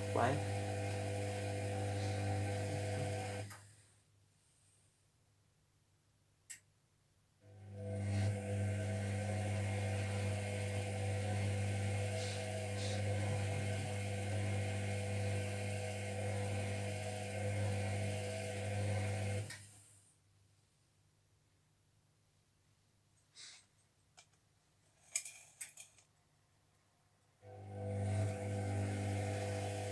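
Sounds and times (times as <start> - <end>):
washing machine humming: 0.0 - 3.5, 7.8 - 19.5, 27.4 - 29.9.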